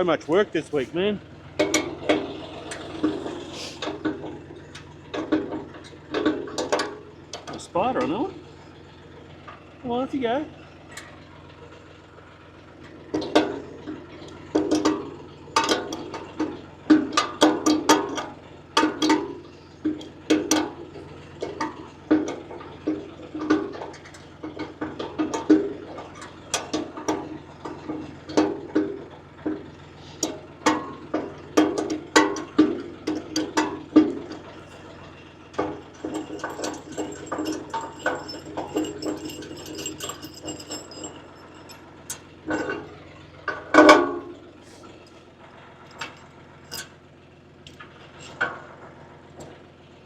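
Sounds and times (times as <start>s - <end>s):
metal parts clanking: 35.5s - 42.9s, 45.9s - 47.0s.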